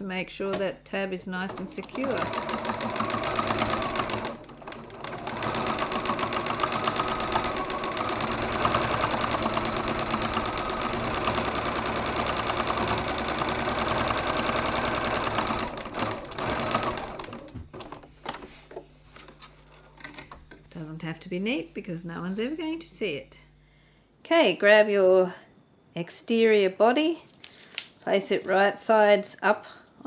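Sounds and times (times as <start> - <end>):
sewing machine stitching: 1.4 - 18.4.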